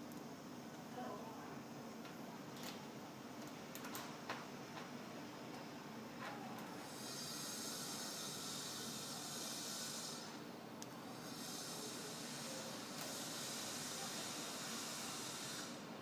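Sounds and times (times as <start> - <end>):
water boiling in a pot: 6.7 - 16.0.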